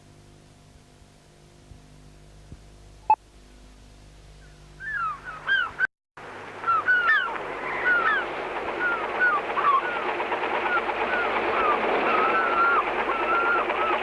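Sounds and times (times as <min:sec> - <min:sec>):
open-air hiss: 0:00.0 - 0:08.9
faint hum: 0:00.0 - 0:14.0
birds calling: 0:04.4 - 0:05.9, 0:06.6 - 0:14.0.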